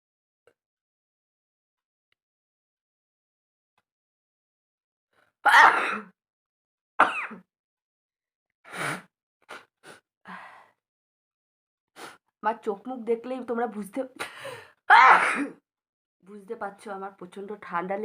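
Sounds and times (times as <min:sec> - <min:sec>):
woman sneezing: 0:05.5 - 0:06.1, 0:14.9 - 0:15.6.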